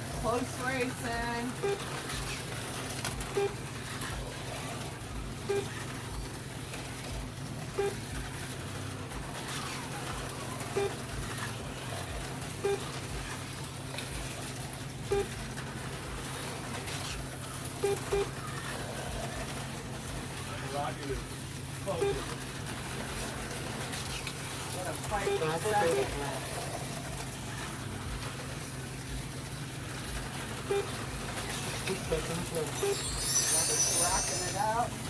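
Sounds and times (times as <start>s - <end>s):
slot car motors whirring: 0.0s - 35.0s
short electronic beep: 32.7s - 34.7s.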